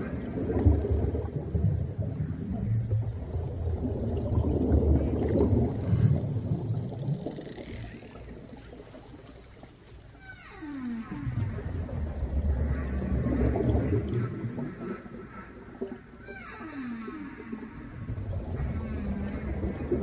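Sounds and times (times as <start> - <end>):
underwater churning rumble: 0.0 - 20.0
whale call sliding down: 10.2 - 11.5.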